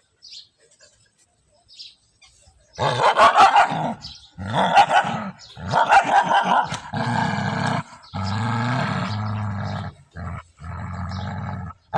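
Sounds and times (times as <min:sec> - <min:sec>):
animal growling: 0:02.8 - 0:11.9.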